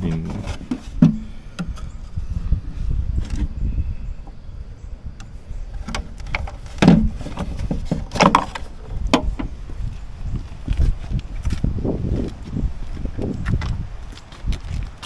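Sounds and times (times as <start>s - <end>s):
knocks and clunks of tools: 0.0s - 2.0s, 5.2s - 9.5s
steady low rumble: 0.0s - 15.0s.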